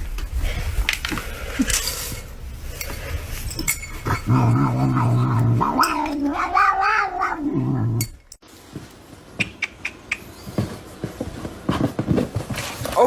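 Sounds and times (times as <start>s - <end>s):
cat yowling: 4.6s - 8.0s.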